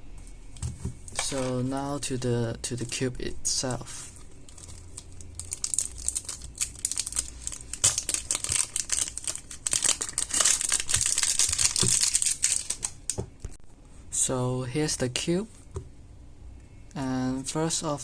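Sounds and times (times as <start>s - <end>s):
plastic packaging crinkling: 4.2s - 13.2s.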